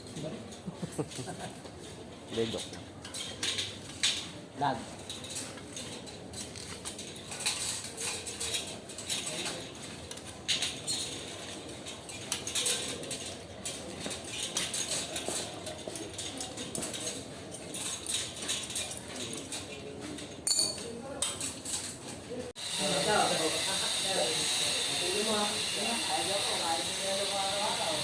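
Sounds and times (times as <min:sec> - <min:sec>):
metallic clicks and clinks: 0:05.0 - 0:22.0.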